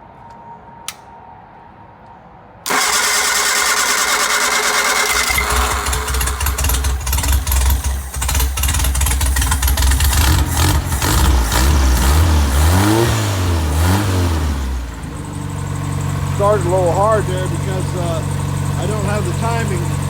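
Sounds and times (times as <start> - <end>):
starter motor cranking: 2.7 - 12.1
unmuffled engine running and revving: 2.8 - 20.0.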